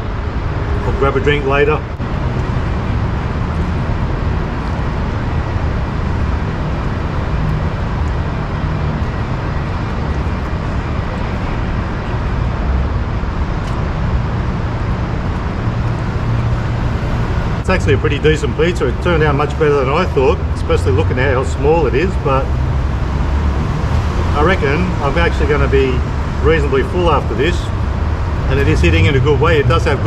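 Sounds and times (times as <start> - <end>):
urban traffic rumble: 0.0 - 30.0.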